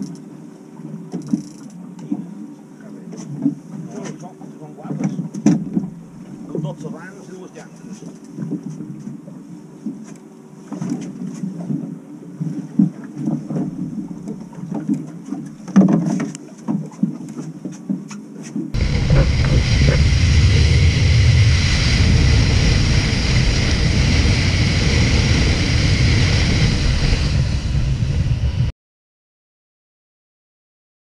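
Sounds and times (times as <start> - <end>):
knocks and clicks on boat: 0.9 - 2.3, 3.1 - 6.7, 9.8 - 18.7
boat running rushing noise: 18.8 - 28.7
wind on microphone: 18.8 - 28.7.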